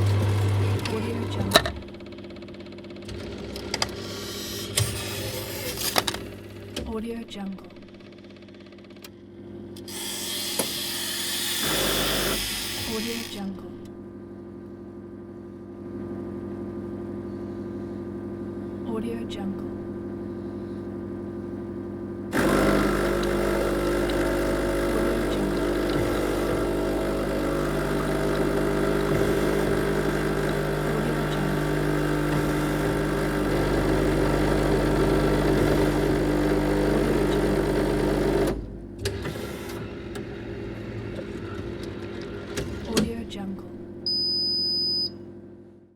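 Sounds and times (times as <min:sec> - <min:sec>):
tea machine motor hum: 0:00.0 - 0:06.8, 0:09.7 - 0:13.5, 0:22.3 - 0:43.0.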